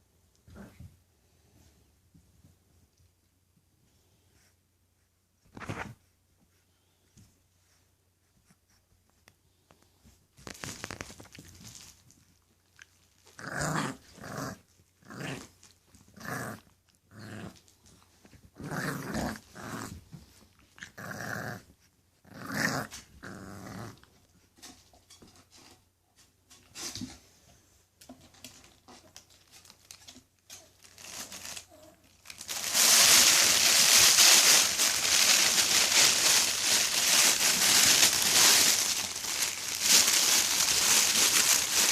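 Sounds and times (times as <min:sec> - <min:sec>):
puppies growling: 0:20.7 - 0:24.2, 0:32.7 - 0:41.9
loud steady rustling: 0:32.3 - 0:41.9.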